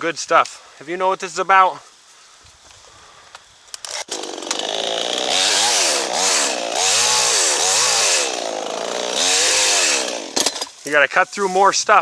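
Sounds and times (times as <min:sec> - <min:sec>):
chainsaw engine revving: 0:03.9 - 0:10.7.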